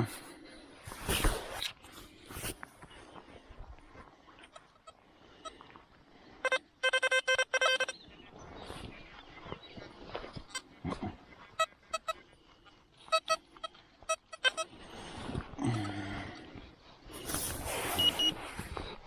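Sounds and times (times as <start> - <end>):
metal detector beeps: 6.4 - 8.0, 13.1 - 14.7, 17.2 - 18.7.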